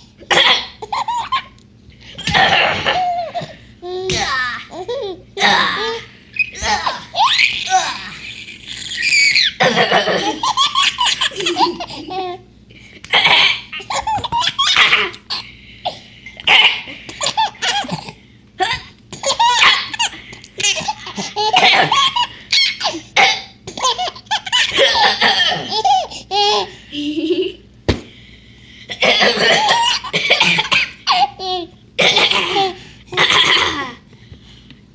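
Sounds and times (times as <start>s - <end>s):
child fake coughing: 0.3s - 0.8s, 13.1s - 13.8s, 20.6s - 22.1s, 28.9s - 31.4s, 32.0s - 34.0s
baby laughing: 0.3s - 1.6s, 2.2s - 5.2s, 5.8s - 12.5s, 13.1s - 15.4s, 16.4s - 23.0s, 23.7s - 27.5s, 29.0s - 33.9s.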